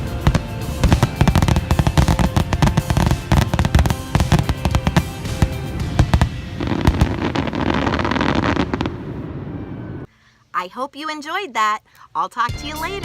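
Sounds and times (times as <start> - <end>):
fireworks popping and crackling: 0.0 - 9.1
background music: 0.0 - 10.7, 12.3 - 13.0.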